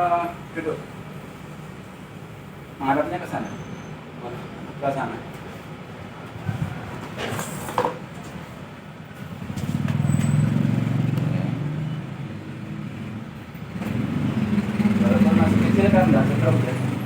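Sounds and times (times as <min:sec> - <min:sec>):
passing vehicle engine rumble: 0:08.7 - 0:17.0.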